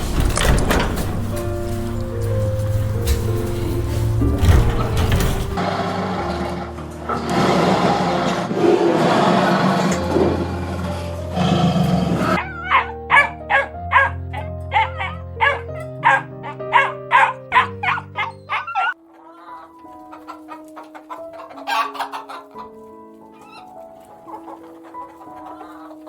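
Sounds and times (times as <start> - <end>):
soft piano music: 0.0 - 26.0
chickens clucking: 12.0 - 26.0.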